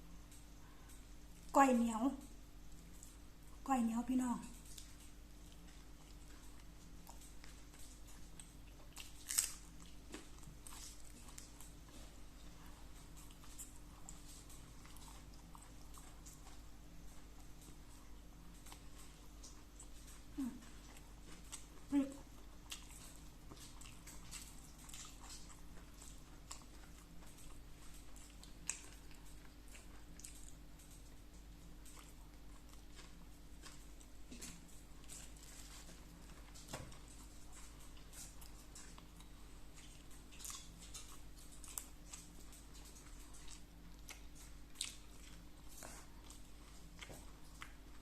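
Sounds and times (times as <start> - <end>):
food crunch: 4.6 - 11.8
person chewing food: 4.6 - 48.0.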